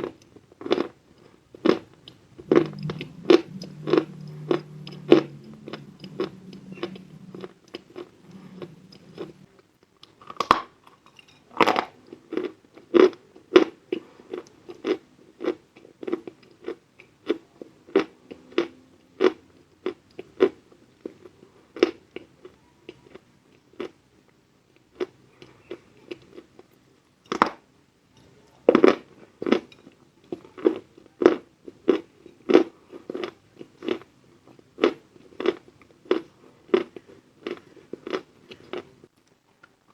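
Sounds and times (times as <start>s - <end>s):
chalk being chewed: 0.1s - 9.5s.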